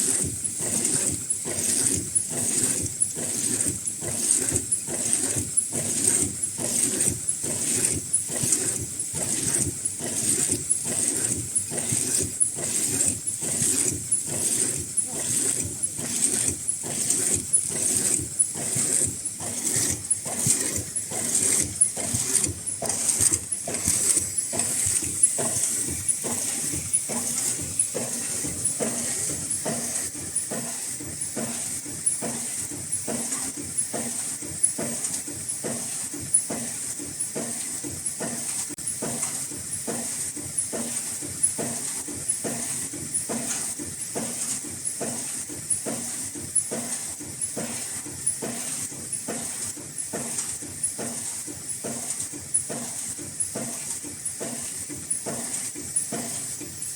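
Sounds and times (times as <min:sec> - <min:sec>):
machine mechanical strokes: 0:00.0 - 0:56.9.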